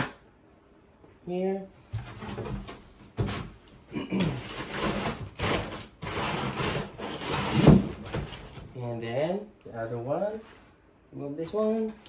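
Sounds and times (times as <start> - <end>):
packaging rubbing and scraping: 4.2 - 8.6.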